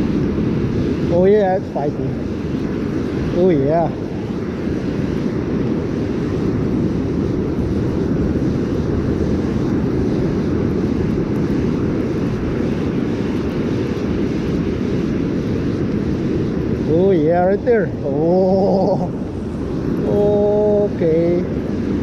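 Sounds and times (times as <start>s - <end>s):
wind: 0.0s - 22.0s
ocean surf: 11.6s - 22.0s.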